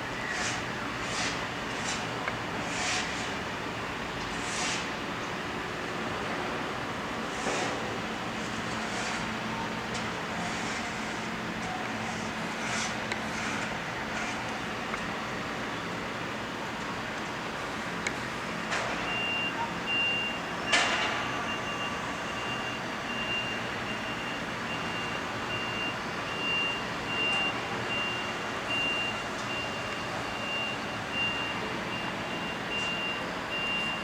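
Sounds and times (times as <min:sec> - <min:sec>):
reversing alarm beeping: 0:18.5 - 0:34.0.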